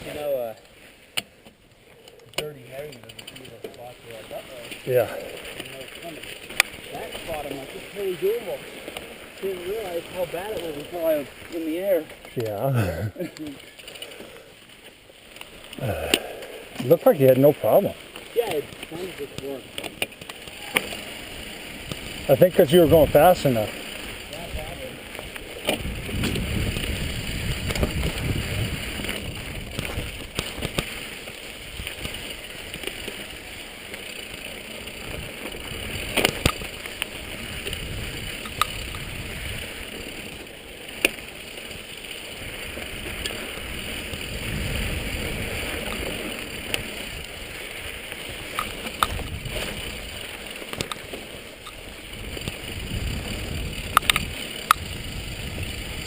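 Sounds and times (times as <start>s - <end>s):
bike tyre noise: 0.0s - 56.0s
bike knocking and rattling: 0.1s - 56.0s
wind buffeting microphone: 25.8s - 30.8s, 37.2s - 39.7s, 43.0s - 45.9s, 49.0s - 50.2s, 52.0s - 56.0s.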